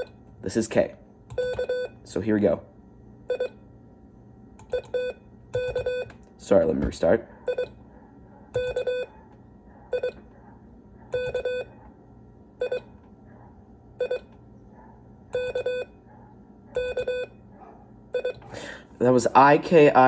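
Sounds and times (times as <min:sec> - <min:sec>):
morse code beeps: 0:01.3 - 0:02.0, 0:03.3 - 0:03.6, 0:04.7 - 0:06.1, 0:07.5 - 0:07.8, 0:08.6 - 0:09.1, 0:09.9 - 0:10.2, 0:11.1 - 0:11.7, 0:12.6 - 0:13.0, 0:14.0 - 0:14.3, 0:15.4 - 0:16.0, 0:16.8 - 0:17.4, 0:18.2 - 0:18.4.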